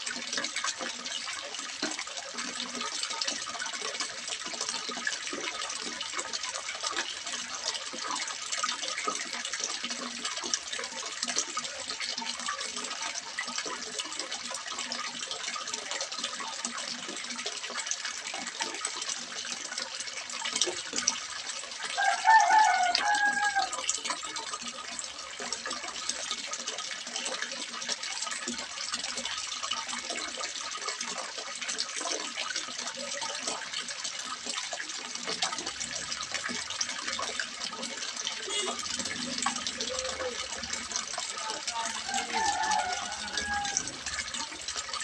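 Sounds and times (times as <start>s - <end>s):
water splashing into pond: 0.0s - 45.0s.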